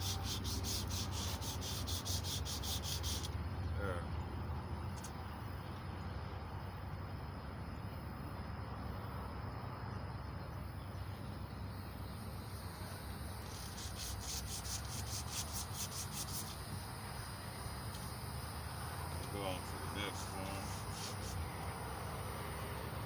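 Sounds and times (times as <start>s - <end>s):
emery cloth rasping on metal: 0.0s - 3.3s, 13.5s - 16.6s.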